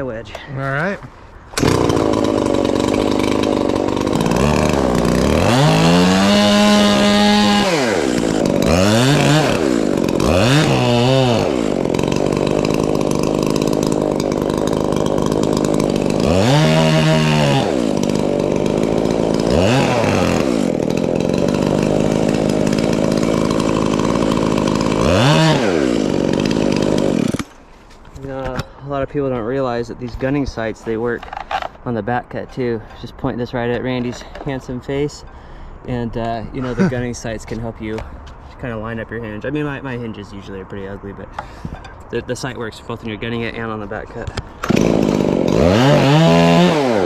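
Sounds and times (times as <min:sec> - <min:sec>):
chainsaw cutting a tree trunk: 0:01.6 - 0:27.7, 0:44.3 - 0:47.0.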